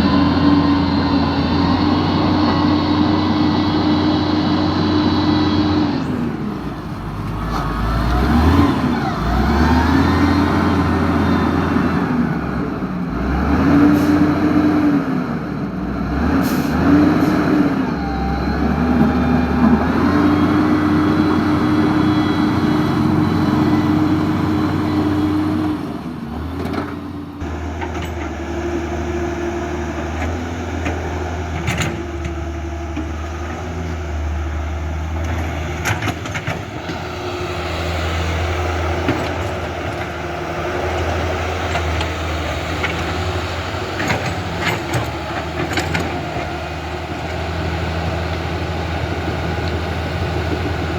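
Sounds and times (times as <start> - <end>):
low engine-like hum: 16.5 - 50.9.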